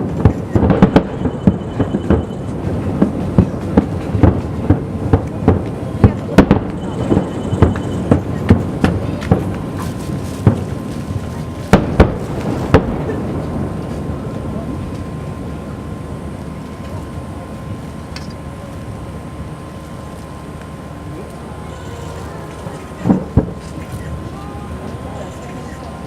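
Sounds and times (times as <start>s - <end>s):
low rumbling wash of noise: 0.0s - 26.0s.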